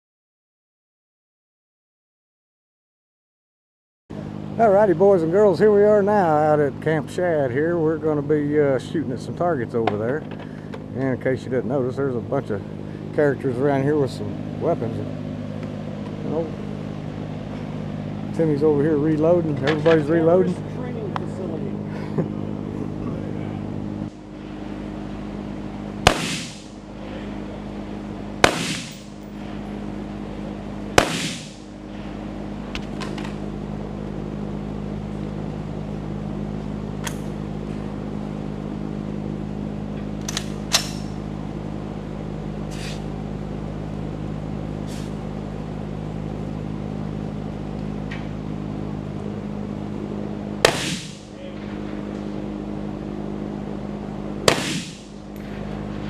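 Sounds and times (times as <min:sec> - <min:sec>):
steady low hum: 0:04.1 - 0:56.0
faint distant gunshots: 0:26.0 - 0:26.8, 0:28.4 - 0:29.1, 0:31.0 - 0:31.7, 0:50.6 - 0:51.3, 0:54.5 - 0:55.2
loud gunshots with echo: 0:26.0 - 0:26.8, 0:28.4 - 0:29.2, 0:31.0 - 0:31.7, 0:50.6 - 0:51.4, 0:54.4 - 0:55.2.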